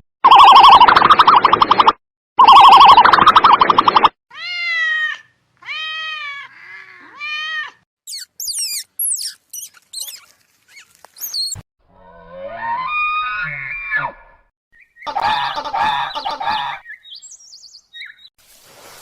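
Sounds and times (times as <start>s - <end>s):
cat meowing: 4.3s - 7.8s
high gliding squeaks: 8.1s - 11.6s.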